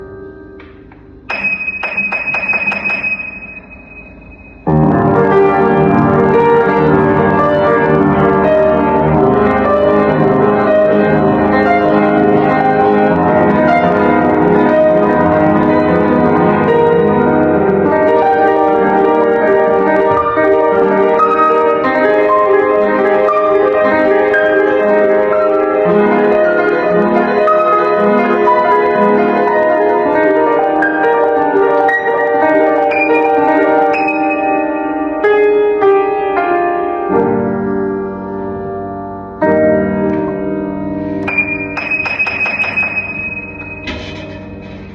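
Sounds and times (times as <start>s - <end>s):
fast piano solo: 1.3s - 43.9s.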